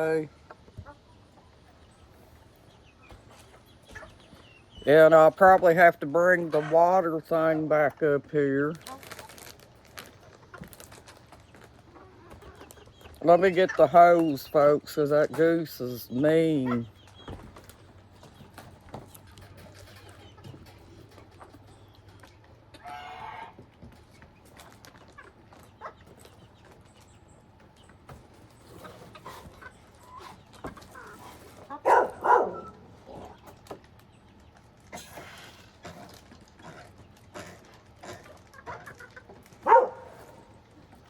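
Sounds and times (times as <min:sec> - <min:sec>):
rustling: 0:08.7 - 0:12.8.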